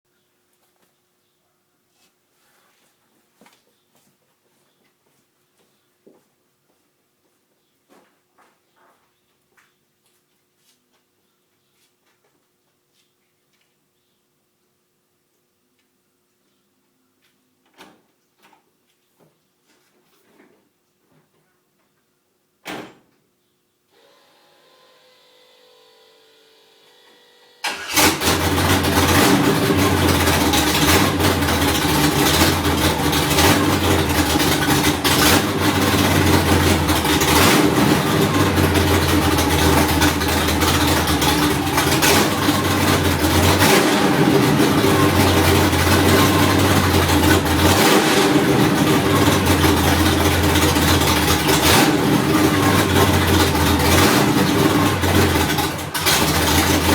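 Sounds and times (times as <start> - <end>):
car engine starting and idling roughly: 27.6 - 56.9.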